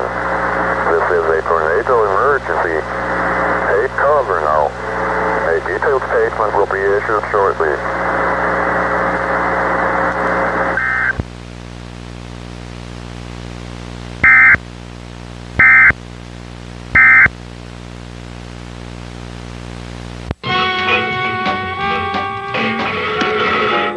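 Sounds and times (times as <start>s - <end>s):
low steady hum: 0.0s - 20.4s
warbling data bursts: 14.2s - 14.6s, 15.6s - 15.9s, 17.0s - 17.3s.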